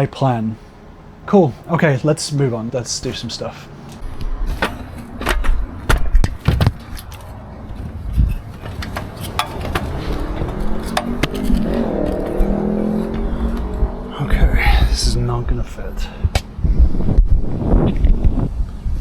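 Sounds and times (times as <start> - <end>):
vehicle engine running: 3.8 - 16.8
low rumble: 4.0 - 19.0
sharp clicks and knocks: 8.3 - 13.9.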